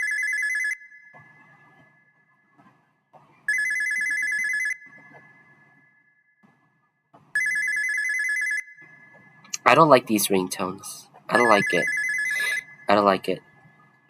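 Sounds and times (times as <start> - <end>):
trilling phone ringtone: 0.0 - 1.2, 3.5 - 5.6, 7.4 - 9.1, 11.3 - 13.0.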